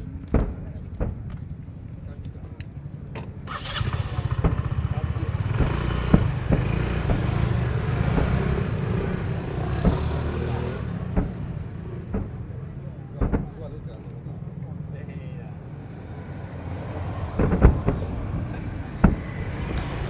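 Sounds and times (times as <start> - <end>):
fireworks barrage: 3.5 - 13.9, 17.0 - 20.0
loud firework bangs: 4.4 - 13.9, 16.8 - 20.0.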